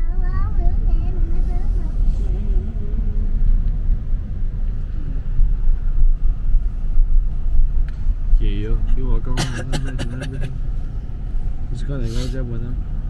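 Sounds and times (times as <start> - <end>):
road and wind noise: 0.0 - 13.0.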